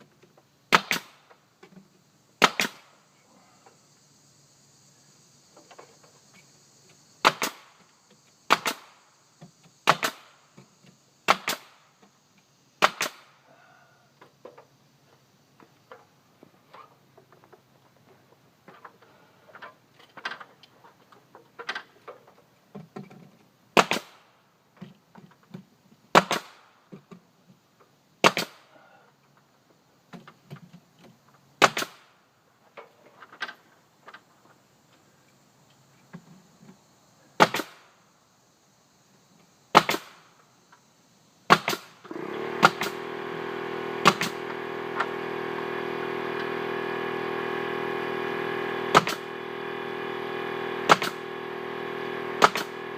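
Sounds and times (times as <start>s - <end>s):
nail gun firing: 0.7s - 1.2s, 2.4s - 2.9s, 7.2s - 7.8s, 8.5s - 9.0s, 9.8s - 10.3s, 11.3s - 11.8s, 12.8s - 13.3s, 23.8s - 24.2s, 26.1s - 26.6s, 28.2s - 28.6s, 31.6s - 32.1s, 37.4s - 37.8s, 39.7s - 40.2s, 41.5s - 43.2s, 43.9s - 45.2s, 48.7s - 49.7s, 50.6s - 52.9s
air compressor running: 42.1s - 52.9s.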